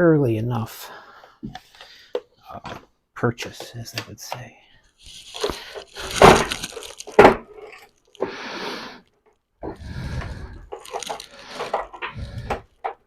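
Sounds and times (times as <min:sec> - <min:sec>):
rustling and clattering objects: 0:05.0 - 0:08.4, 0:09.2 - 0:13.0.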